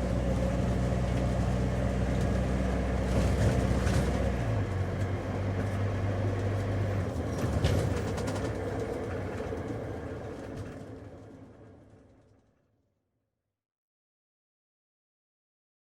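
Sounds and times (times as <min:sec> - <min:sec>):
road noise inside car: 0:00.0 - 0:12.2.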